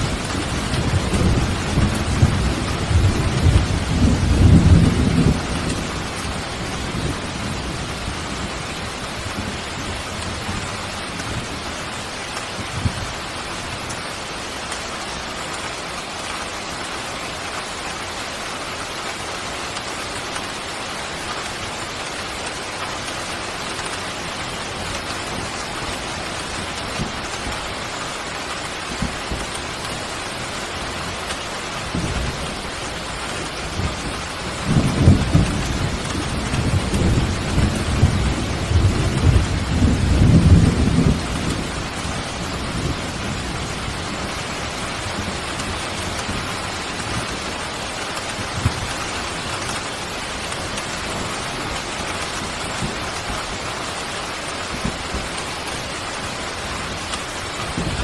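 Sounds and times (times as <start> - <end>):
thunder rumbling: 0.0 - 13.8, 28.7 - 58.0
steady rain: 0.0 - 58.0.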